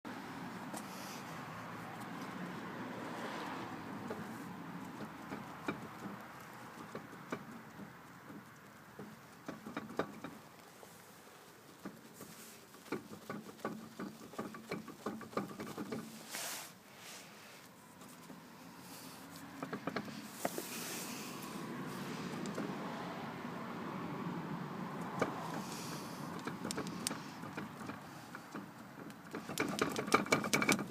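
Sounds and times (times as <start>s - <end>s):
car rolling noise: 0.1s - 30.9s
clicks and knocks: 5.0s - 10.4s, 19.6s - 20.6s, 26.4s - 30.9s
sharp irregular clicks: 25.0s - 30.9s.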